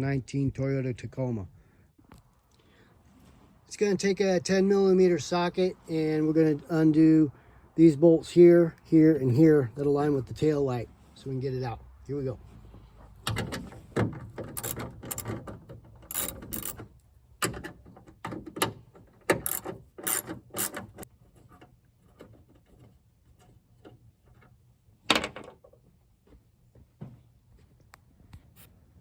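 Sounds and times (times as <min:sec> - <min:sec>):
ratchet clicking: 0:14.6 - 0:15.4, 0:16.0 - 0:16.9, 0:19.3 - 0:21.0.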